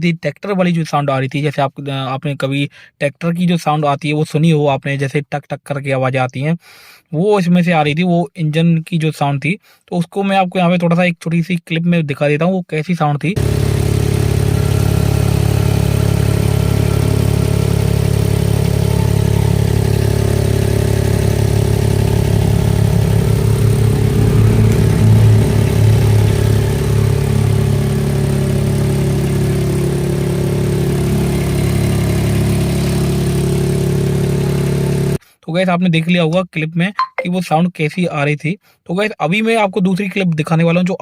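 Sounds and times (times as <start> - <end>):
car idling with exhaust clatter: 13.4 - 35.2.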